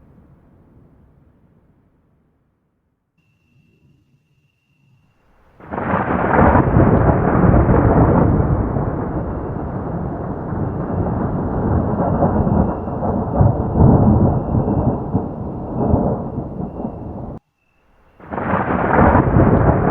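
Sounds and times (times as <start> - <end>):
rolling thunder: 5.3 - 17.4, 18.2 - 19.9.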